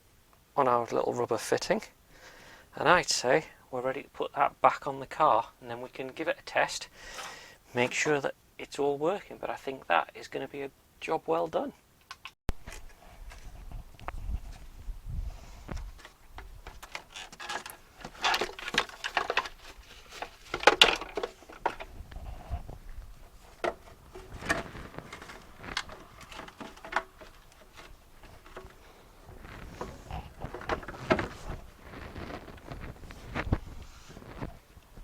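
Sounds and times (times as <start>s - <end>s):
plastic parts clicking and rattling: 16.0s - 21.9s, 23.2s - 33.6s.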